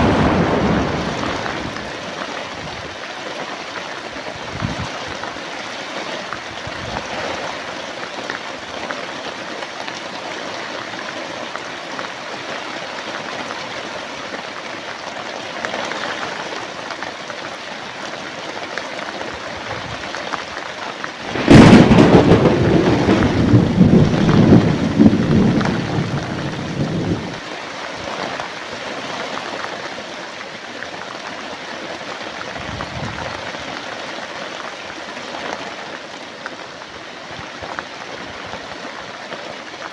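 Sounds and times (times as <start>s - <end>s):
thunderclap rumbling: 0.0s - 2.2s, 21.2s - 27.4s
steady rain falling: 0.0s - 39.9s.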